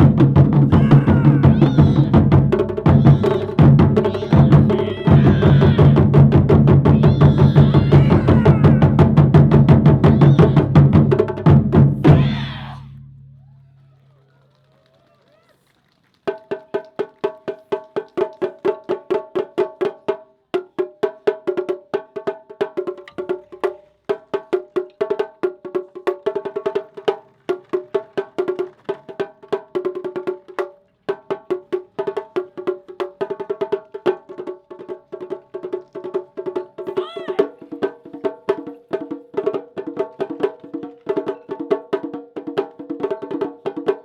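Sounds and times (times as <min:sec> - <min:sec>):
rapid woody drum strikes: 0:00.0 - 0:12.8.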